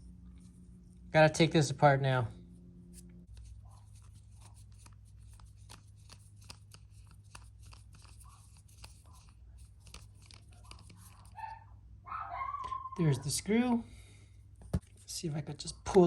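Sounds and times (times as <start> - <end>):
steady low hum: 0.0 - 12.2
faint clicks and scrapes of plastic parts: 2.9 - 11.6.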